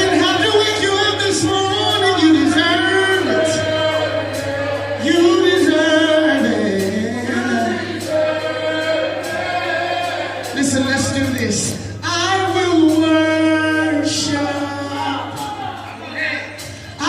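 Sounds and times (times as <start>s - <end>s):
choir singing gospel song: 0.0s - 17.0s.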